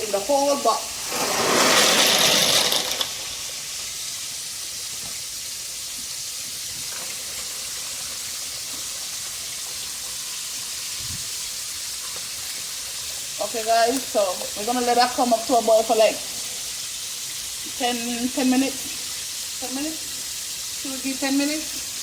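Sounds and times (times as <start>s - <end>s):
chicken frying in oil: 0.0s - 1.8s, 3.0s - 22.0s
pasta poured into water: 0.1s - 14.6s.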